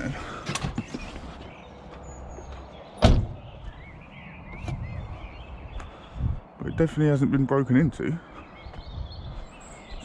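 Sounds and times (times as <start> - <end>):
van door shutting with heavy thud: 3.0 - 3.4.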